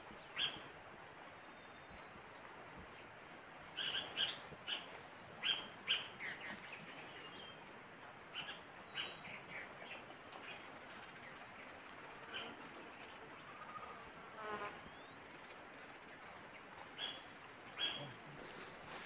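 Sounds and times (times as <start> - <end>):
birds chirping: 16.9 - 19.0.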